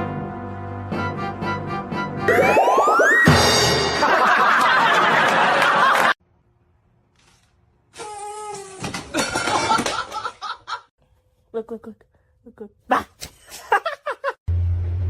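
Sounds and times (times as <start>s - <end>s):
people laughing: 4.0s - 6.2s, 9.1s - 10.9s, 13.5s - 14.4s.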